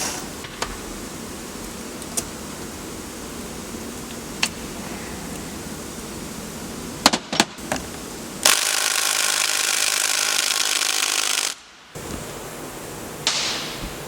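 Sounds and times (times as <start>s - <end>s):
power tool running: 8.4s - 12.1s.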